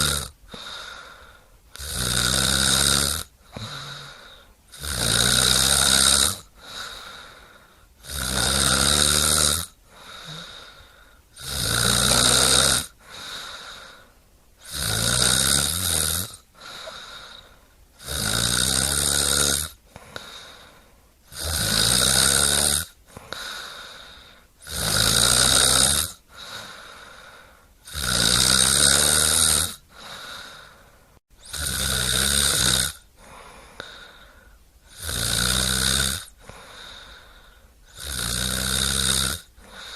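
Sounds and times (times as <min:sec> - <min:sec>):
faint breathing: 0:00.0 - 0:01.8, 0:03.4 - 0:04.7, 0:06.5 - 0:08.0, 0:09.8 - 0:11.4, 0:12.9 - 0:14.4, 0:16.5 - 0:18.0, 0:19.8 - 0:21.3, 0:23.0 - 0:24.6, 0:26.2 - 0:27.8, 0:29.8 - 0:31.4, 0:33.1 - 0:34.7, 0:36.3 - 0:38.0, 0:39.5 - 0:39.9
deep snoring: 0:00.0 - 0:39.9.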